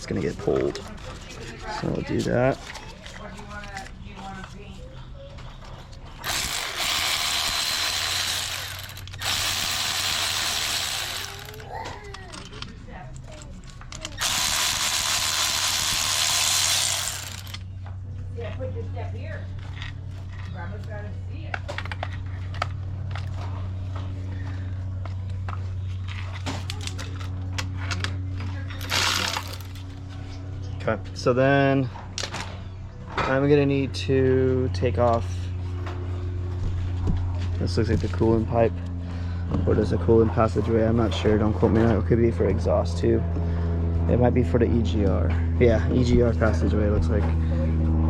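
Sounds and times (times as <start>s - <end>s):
steady low hum: 0.0s - 48.0s
power ratchet running: 6.2s - 11.8s, 13.9s - 17.7s, 28.8s - 29.9s.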